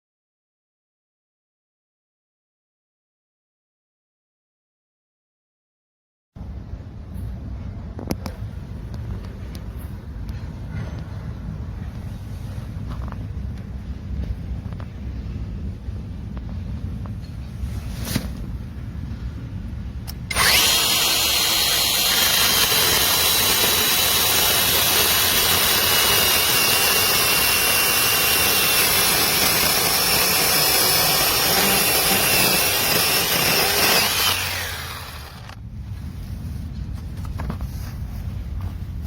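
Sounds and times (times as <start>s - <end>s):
mini chainsaw motor whine: 20.3s - 35.6s.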